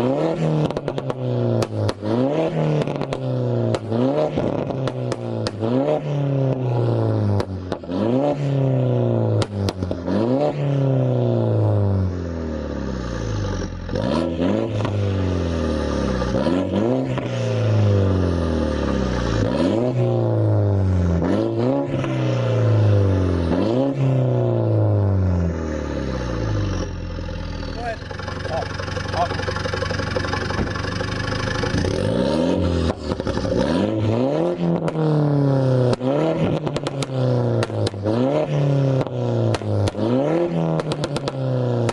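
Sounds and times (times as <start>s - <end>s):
car engine revving: 0.0s - 41.9s
exhaust pops and cracks: 0.6s - 2.1s, 2.7s - 5.7s, 9.4s - 10.0s, 28.0s - 33.6s, 34.7s - 35.1s, 35.8s - 38.1s, 39.0s - 40.1s, 40.7s - 41.9s.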